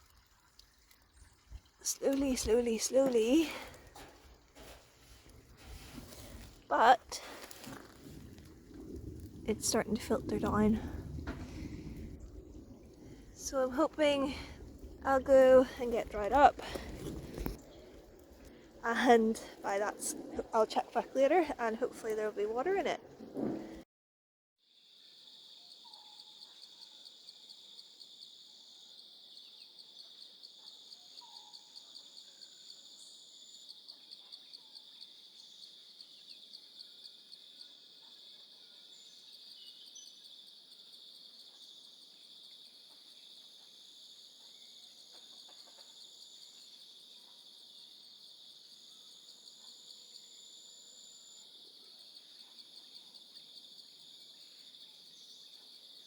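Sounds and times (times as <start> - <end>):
crickets trilling: 24.8 - 56.0.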